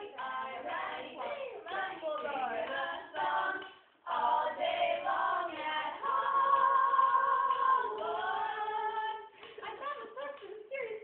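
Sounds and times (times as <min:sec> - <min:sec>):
young voices singing a cappella: 0:00.0 - 0:11.0.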